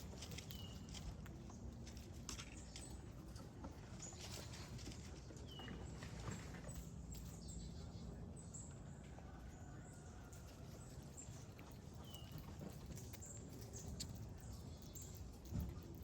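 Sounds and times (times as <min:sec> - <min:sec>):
squirrels scurrying: 0:00.0 - 0:05.6, 0:10.2 - 0:16.0.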